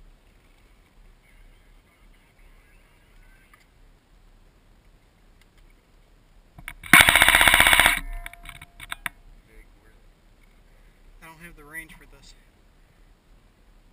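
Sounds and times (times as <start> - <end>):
airsoft rifle full-auto burst: 6.6 - 9.0.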